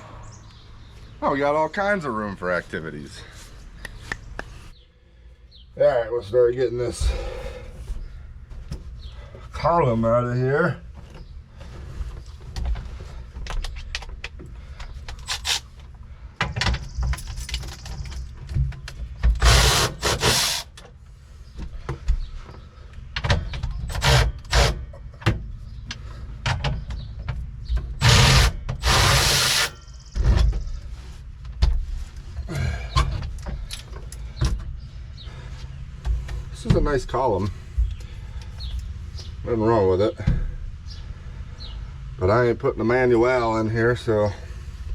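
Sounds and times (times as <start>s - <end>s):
power tool bursts: 19.4s - 20.8s, 23.9s - 24.8s, 28.0s - 29.8s.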